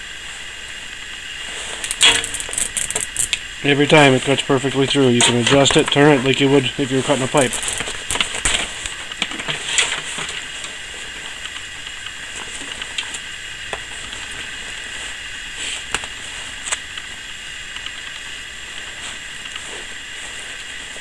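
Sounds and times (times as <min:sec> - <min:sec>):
wire stripper scraping insulation: 0:01.8 - 0:03.4, 0:07.3 - 0:08.8
clicks and crackles: 0:01.8 - 0:03.5, 0:07.3 - 0:09.3.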